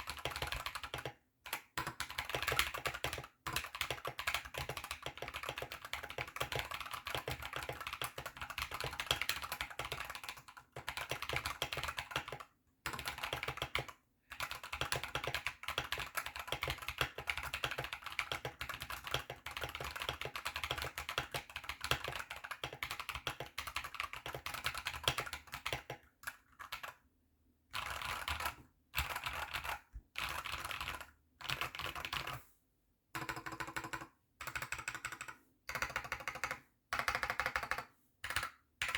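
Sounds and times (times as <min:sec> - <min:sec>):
mechanical keyboard typing: 0:00.0 - 0:27.0, 0:27.7 - 0:32.4, 0:33.2 - 0:38.9.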